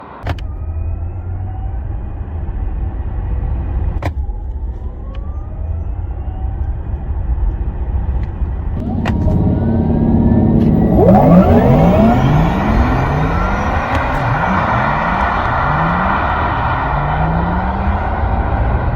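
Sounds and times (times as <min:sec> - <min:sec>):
road rumble: 0:00.0 - 0:18.9
synthetic car driving tones: 0:04.3 - 0:18.9.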